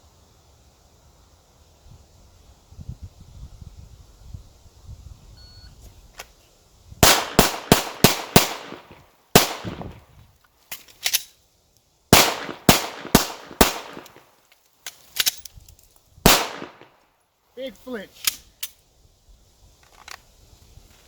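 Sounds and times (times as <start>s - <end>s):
pistol shots: 7.0s - 9.9s, 12.1s - 14.3s, 16.3s - 16.9s.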